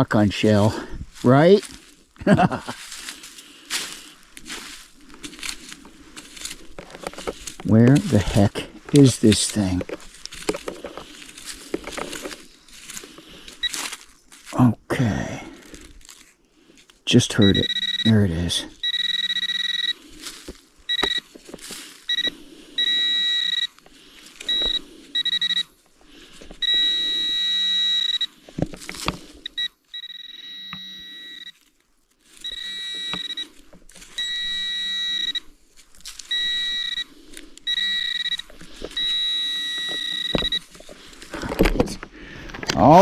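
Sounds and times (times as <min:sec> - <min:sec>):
dirt scraping: 0:00.0 - 0:30.2, 0:30.9 - 0:43.0
metal detector beeping: 0:05.4 - 0:12.5, 0:13.4 - 0:13.9, 0:17.1 - 0:31.6, 0:32.3 - 0:41.2.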